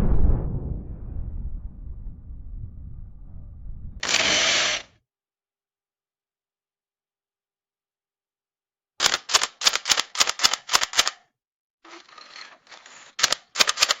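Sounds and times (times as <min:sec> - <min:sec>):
rough mechanical whirr: 0:00.0 - 0:04.9
camera shutter clicking: 0:04.0 - 0:04.8, 0:09.0 - 0:11.2, 0:13.1 - 0:14.0.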